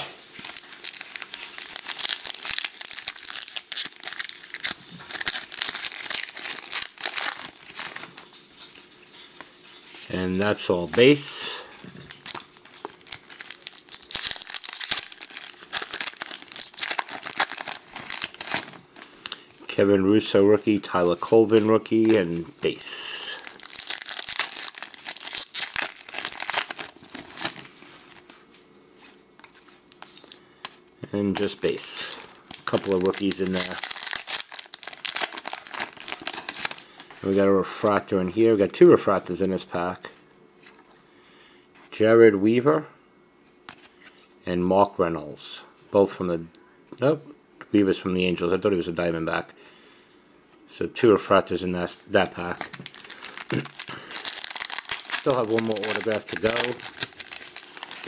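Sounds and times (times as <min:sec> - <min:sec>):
foil wrapper crinkling and tearing: 0:00.0 - 0:19.8, 0:20.8 - 0:28.4, 0:29.4 - 0:37.4, 0:51.9 - 0:58.0.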